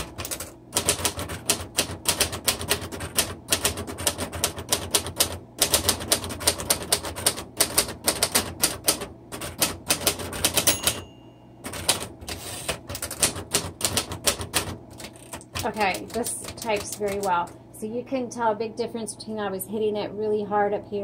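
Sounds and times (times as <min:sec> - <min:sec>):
typewriter keys clicking: 0:00.0 - 0:11.0, 0:11.6 - 0:17.5
typewriter bell ringing: 0:10.5 - 0:12.0.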